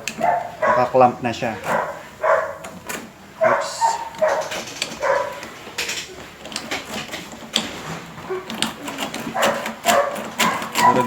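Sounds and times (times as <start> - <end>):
dog barking: 0.0 - 2.7, 3.4 - 5.4, 8.2 - 11.0.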